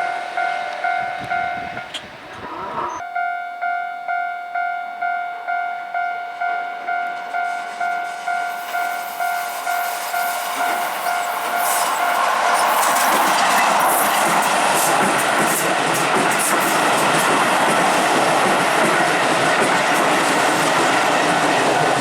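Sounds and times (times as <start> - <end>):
electric train on rails: 0.0 - 22.0
level crossing bell ringing: 2.6 - 12.2.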